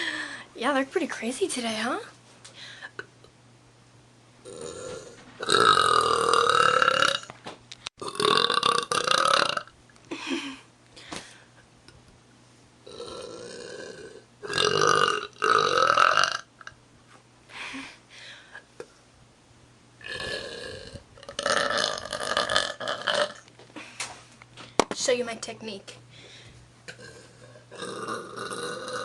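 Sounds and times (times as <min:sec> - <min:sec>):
woman burping: 0:04.5 - 0:07.3, 0:08.0 - 0:10.6, 0:12.9 - 0:16.4, 0:20.0 - 0:23.4, 0:26.9 - 0:29.0.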